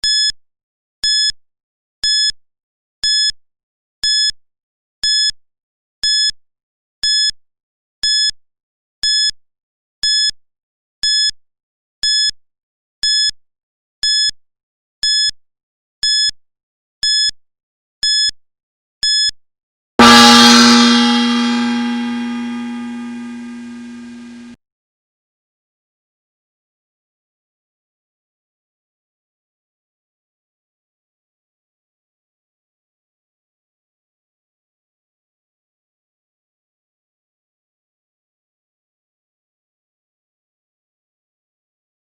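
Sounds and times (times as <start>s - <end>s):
gong ringing: 20.0s - 24.6s.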